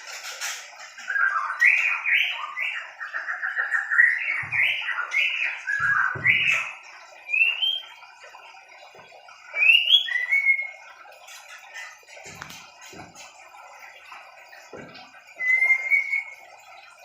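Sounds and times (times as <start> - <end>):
bird chirping: 0.0 - 17.0
rising whistled bird notes: 9.6 - 10.8, 14.8 - 16.7.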